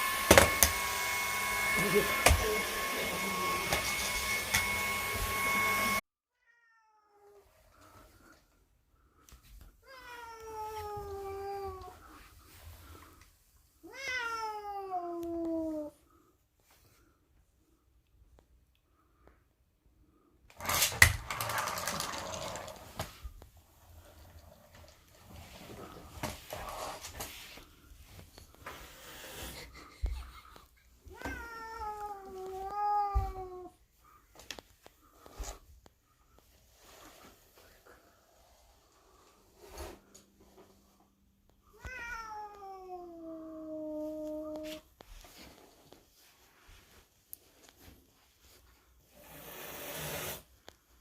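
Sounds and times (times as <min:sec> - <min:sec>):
cat meowing: 0:13.8 - 0:15.9, 0:31.1 - 0:33.7, 0:41.7 - 0:44.6.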